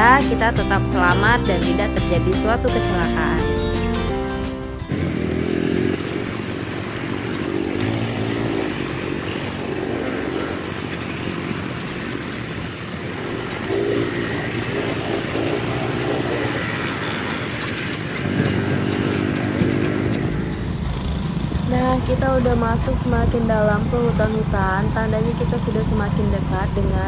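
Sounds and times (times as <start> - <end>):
small motorcycle engine revving: 4.8 - 21.7.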